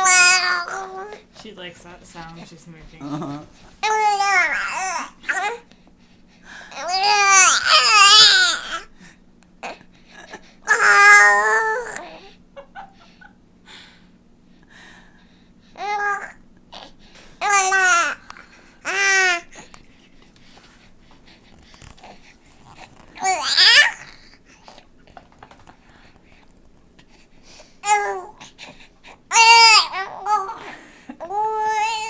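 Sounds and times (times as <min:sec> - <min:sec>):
baby babbling: 0:00.0 - 0:01.2, 0:03.8 - 0:05.6, 0:06.8 - 0:08.9, 0:10.7 - 0:12.3, 0:15.8 - 0:19.5, 0:23.2 - 0:24.4, 0:27.8 - 0:28.4, 0:29.3 - 0:32.0.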